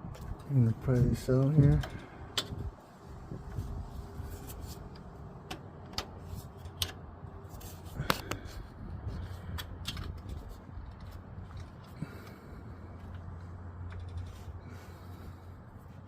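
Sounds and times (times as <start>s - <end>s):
hand tool clicks and scrapes: 9.2s - 12.0s, 13.1s - 14.6s.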